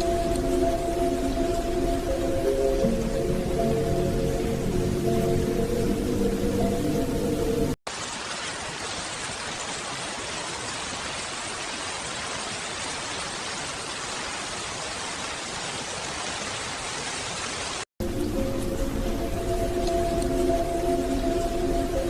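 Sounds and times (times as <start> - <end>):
music: 0.0 - 7.8, 18.0 - 22.0
steady rain hiss: 0.0 - 22.0.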